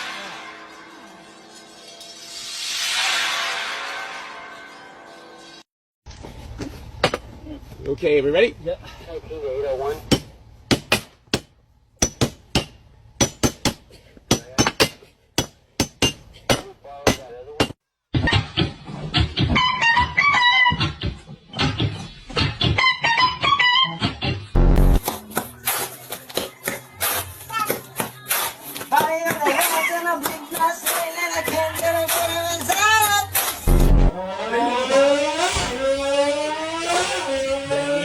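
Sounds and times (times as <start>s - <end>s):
hammers striking metal: 10.1s - 18.7s
low bass note: 24.6s - 25.0s, 33.7s - 34.2s
person singing over a beat: 29.0s - 33.4s.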